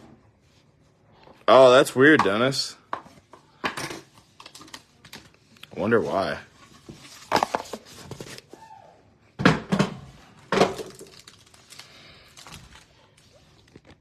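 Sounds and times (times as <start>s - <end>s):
cards rustling and knocking: 2.9s - 8.5s.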